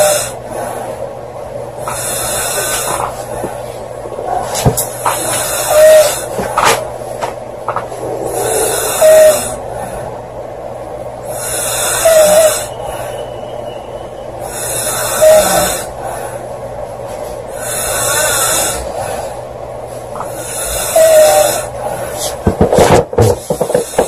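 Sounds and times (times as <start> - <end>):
girl snoring with whistle: 0.0 - 0.4, 5.2 - 6.3, 8.0 - 9.6, 11.3 - 13.8, 14.4 - 15.9, 20.3 - 21.7.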